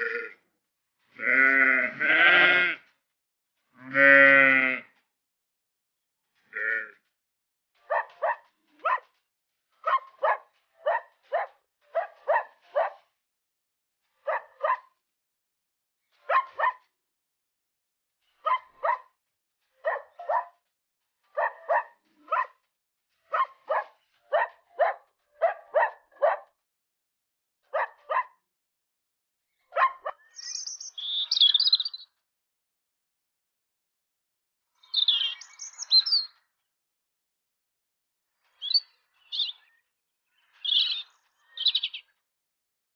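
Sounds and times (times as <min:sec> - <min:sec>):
dog barking: 0:07.8 - 0:09.2, 0:09.8 - 0:13.1, 0:14.2 - 0:15.0, 0:16.2 - 0:16.9, 0:18.4 - 0:19.1, 0:19.8 - 0:20.6, 0:21.3 - 0:22.7, 0:23.3 - 0:26.5, 0:27.7 - 0:28.4, 0:29.7 - 0:30.2
bird chirping: 0:29.8 - 0:32.1, 0:34.8 - 0:36.4, 0:38.4 - 0:42.2.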